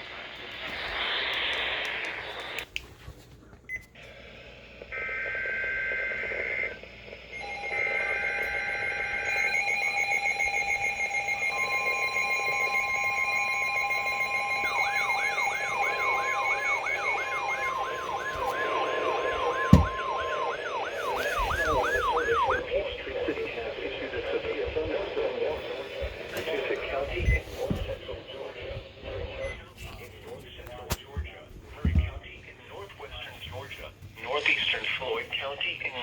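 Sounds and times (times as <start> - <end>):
emergency alert tones: 5.0 - 29.7
fast beeping: 7.4 - 22.7
rising whoop siren: 14.0 - 22.6.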